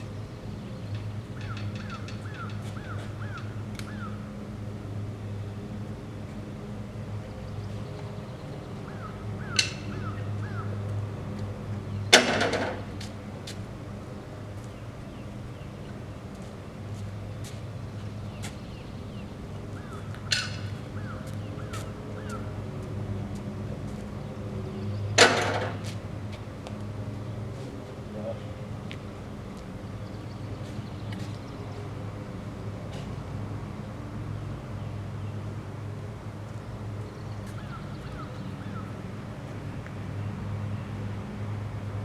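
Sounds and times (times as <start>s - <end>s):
sharp knocks: 12.1s - 13.1s, 25.2s - 26.0s.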